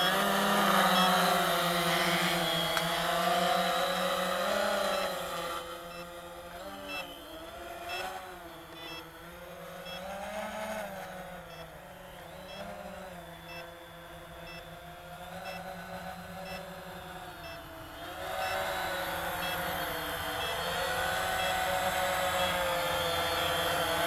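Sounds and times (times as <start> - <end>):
quadcopter motors droning: 0.0 - 24.0.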